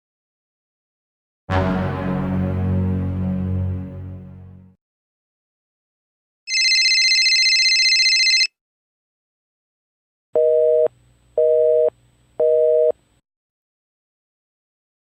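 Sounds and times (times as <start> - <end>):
telephone busy signal: 6.5 - 8.5.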